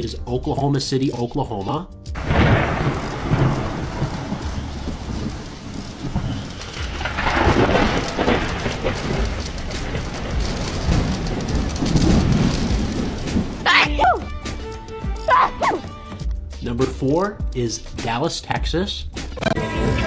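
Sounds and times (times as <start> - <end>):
rolling thunder: 2.2 - 14.8
rain falling: 2.2 - 16.2.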